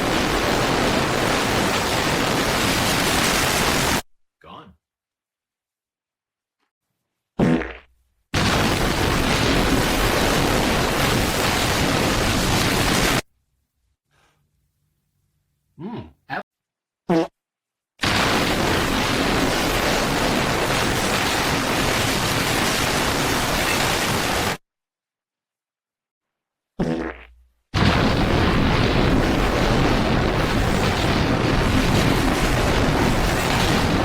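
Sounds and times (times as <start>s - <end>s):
short falling pitched fart: 7.4s - 8.8s, 17.1s - 17.4s, 26.8s - 28.3s
long rumbling comic fart: 7.4s - 13.2s, 17.1s - 17.3s, 26.8s - 34.0s.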